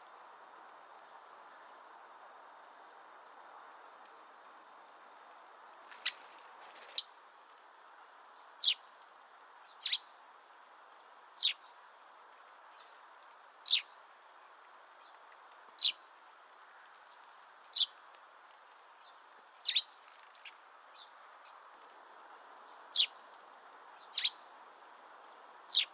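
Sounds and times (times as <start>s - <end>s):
woodpecker call notes: 9.7s - 10.2s, 11.4s - 11.6s, 13.6s - 13.9s, 15.8s - 16.1s, 19.6s - 21.6s, 22.9s - 23.2s, 24.0s - 24.5s.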